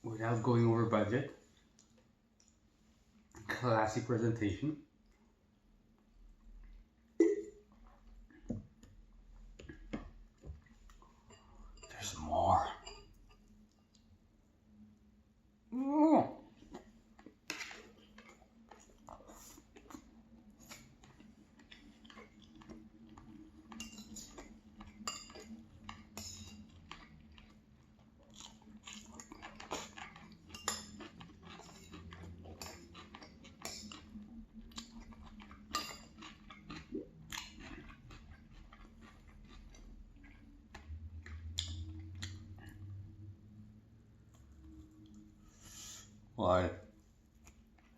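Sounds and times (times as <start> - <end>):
faint low hum: 0.0 - 47.9
person chewing: 16.5 - 43.1
cutlery clinking on a plate: 23.7 - 26.7, 29.4 - 34.0.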